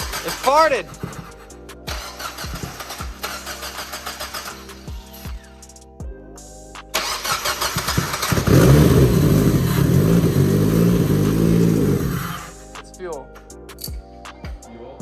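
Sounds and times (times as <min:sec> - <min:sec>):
engine cranking without starting: 0:00.0 - 0:04.7, 0:07.0 - 0:12.6.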